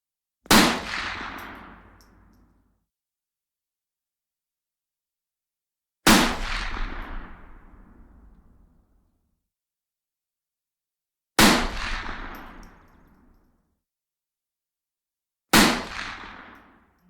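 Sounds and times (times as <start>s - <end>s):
rifle shots with echo: 0.5s - 2.0s, 11.4s - 13.0s, 15.6s - 16.7s.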